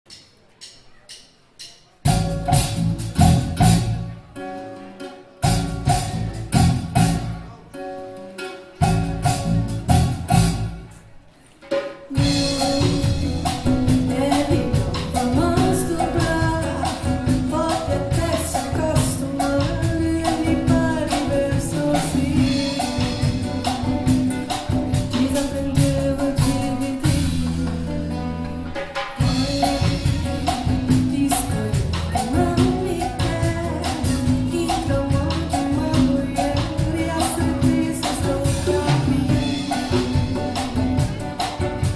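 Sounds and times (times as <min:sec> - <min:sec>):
busy percussion: 0:00.1 - 0:41.9
bass line: 0:02.1 - 0:04.3, 0:05.4 - 0:07.6, 0:08.8 - 0:10.9, 0:12.1 - 0:41.9
person singing: 0:12.1 - 0:41.9.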